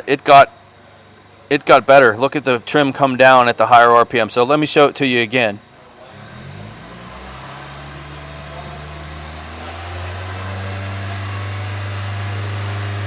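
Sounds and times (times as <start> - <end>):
car engine revving: 5.7 - 13.0.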